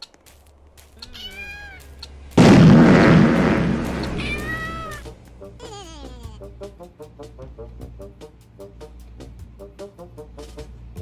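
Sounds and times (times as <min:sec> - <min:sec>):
loud blast: 0:02.4 - 0:05.1.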